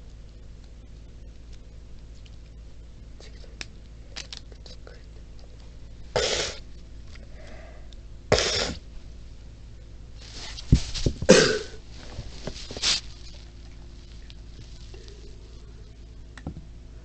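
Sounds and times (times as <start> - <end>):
person coughing: 8.3 - 8.8, 11.3 - 11.8.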